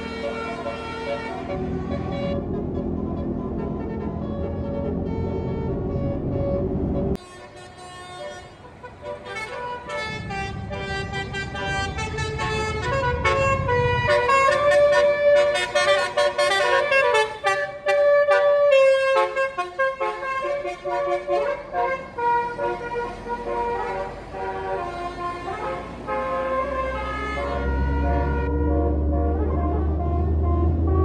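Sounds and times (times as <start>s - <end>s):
musical air horn melody: 0.0s - 31.0s
low rumble: 1.5s - 7.2s, 10.1s - 15.0s.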